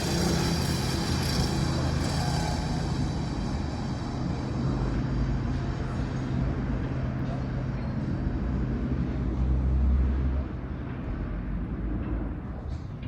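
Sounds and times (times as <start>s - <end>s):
low hum: 0.0s - 8.8s.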